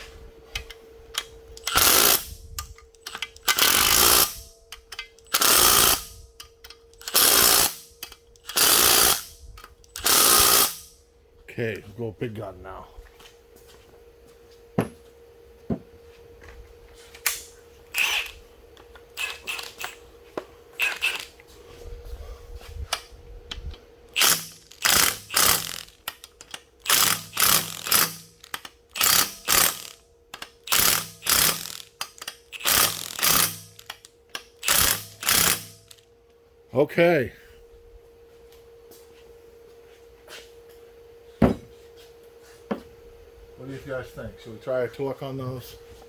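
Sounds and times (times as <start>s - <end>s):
faint steady hum: 0.0s - 46.0s
power tool running down bolts: 0.7s - 11.0s, 17.9s - 18.4s, 19.0s - 20.0s, 20.8s - 21.4s, 24.1s - 36.0s.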